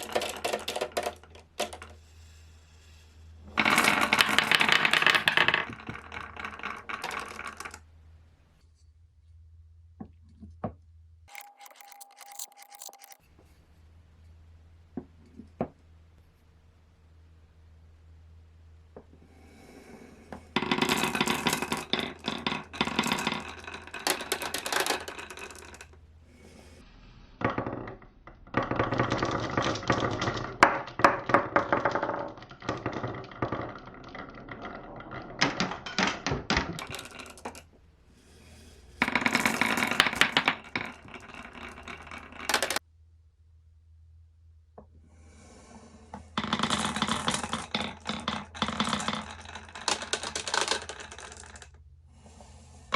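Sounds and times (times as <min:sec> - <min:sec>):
marbles clattering down a run: 0:00.0 - 0:02.0, 0:03.5 - 0:07.9, 0:20.6 - 0:26.0, 0:27.4 - 0:37.7, 0:39.0 - 0:42.8, 0:46.4 - 0:51.8.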